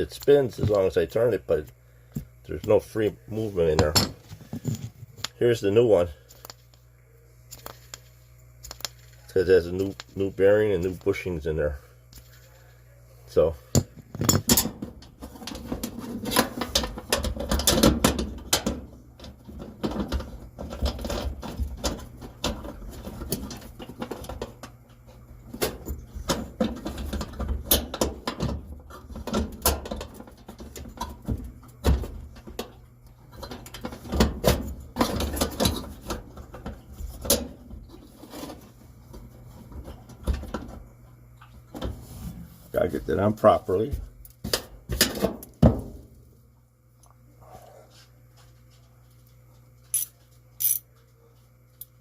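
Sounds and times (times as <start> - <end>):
faint low hum: 0.0 - 52.0
metal parts and tools clinking: 49.9 - 50.9.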